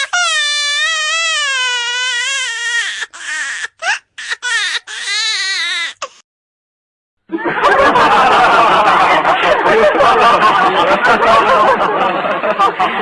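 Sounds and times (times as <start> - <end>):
baby crying: 0.0 - 6.2.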